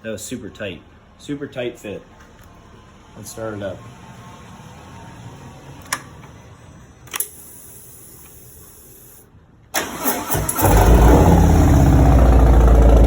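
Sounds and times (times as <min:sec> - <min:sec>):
motorcycle engine starting: 0:09.8 - 0:13.0.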